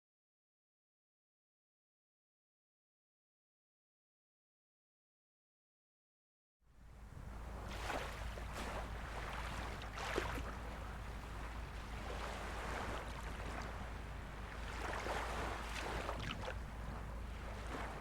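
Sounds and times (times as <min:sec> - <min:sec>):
sea waves washing ashore: 0:06.9 - 0:18.0
steady low rumble: 0:06.9 - 0:18.0.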